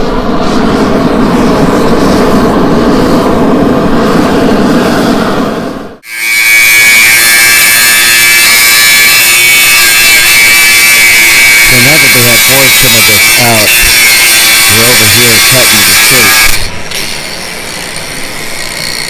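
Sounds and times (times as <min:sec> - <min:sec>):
belt grinder whining: 0:06.0 - 0:19.0.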